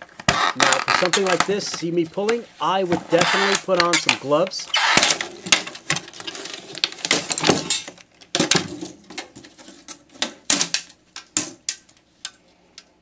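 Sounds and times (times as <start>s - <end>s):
clicks and rattles of parts: 5.0s - 13.0s.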